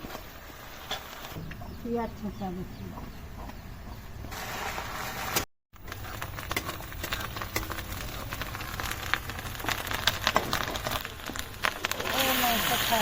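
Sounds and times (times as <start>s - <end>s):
onion sizzling in hot oil: 4.3s - 13.0s.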